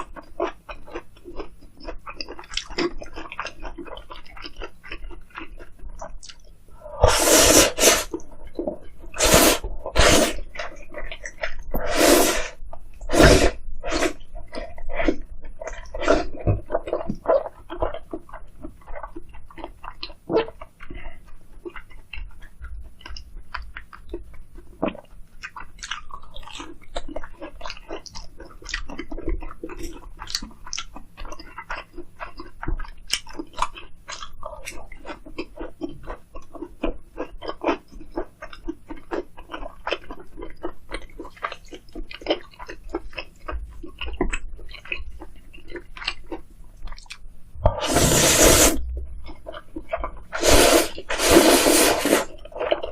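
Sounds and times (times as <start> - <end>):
person chewing food: 0.0 - 52.9
wet mouth clicks: 6.0 - 8.2.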